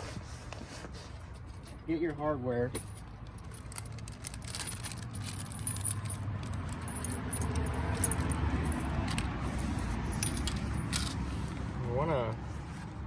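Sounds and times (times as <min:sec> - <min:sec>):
metal hardware clinking: 0:02.7 - 0:11.4.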